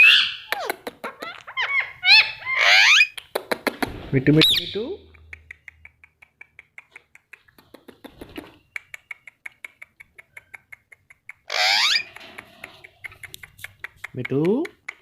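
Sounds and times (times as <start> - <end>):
parrot squawk: 0.0 - 3.2, 11.5 - 12.2
parrot clicking: 5.1 - 15.0.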